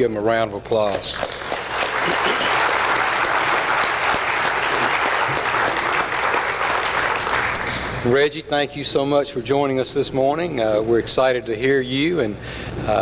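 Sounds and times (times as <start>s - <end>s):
audience applauding: 1.0s - 8.0s.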